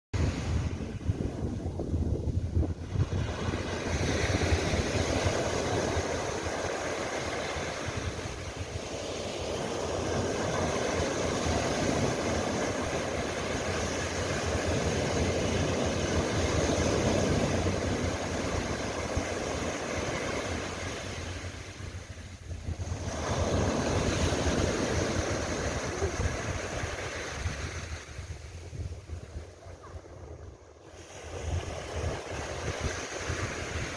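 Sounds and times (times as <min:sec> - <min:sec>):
waves breaking on beach: 0:00.2 - 0:33.9
wind rumble on microphone: 0:00.2 - 0:33.9.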